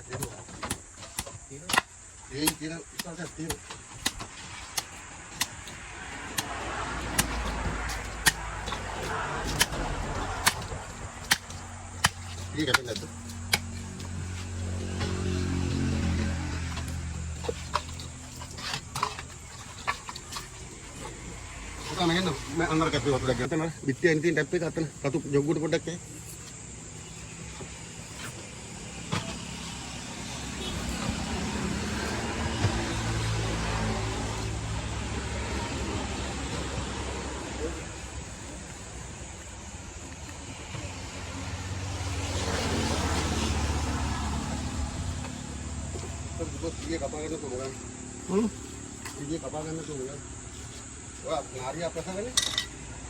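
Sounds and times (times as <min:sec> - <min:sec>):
knife chopping fish: 0:00.2 - 0:14.2
passing vehicle engine: 0:05.0 - 0:23.6, 0:27.3 - 0:52.3
engine drone: 0:05.4 - 0:23.5.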